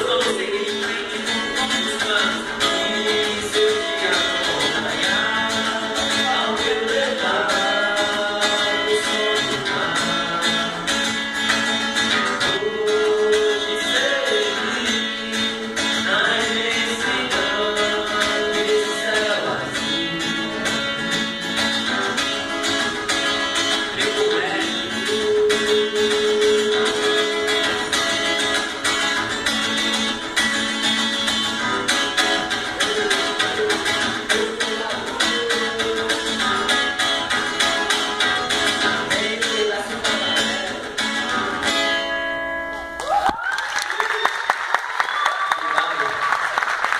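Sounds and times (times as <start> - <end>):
person singing: 0.0 - 11.1, 12.1 - 21.3, 23.7 - 28.1, 32.2 - 41.8
guitar-led backing with beat: 0.0 - 43.0
crowd cheering and clapping: 42.8 - 46.9.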